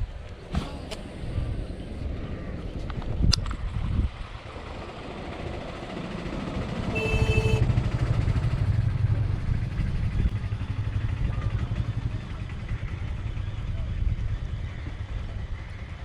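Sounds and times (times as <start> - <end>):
motorcycle engine running: 4.0 - 16.0
short horn beep: 6.9 - 7.7.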